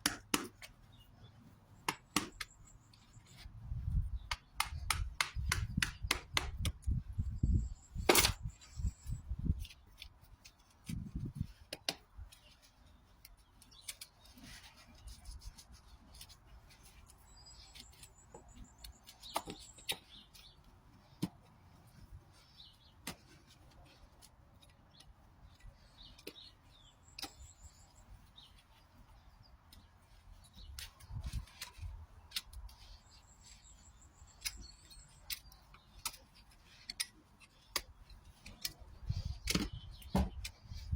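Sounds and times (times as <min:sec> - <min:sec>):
tools clicking and scraping hoof: 0:00.0 - 0:40.9
bird chirps: 0:16.7 - 0:21.2.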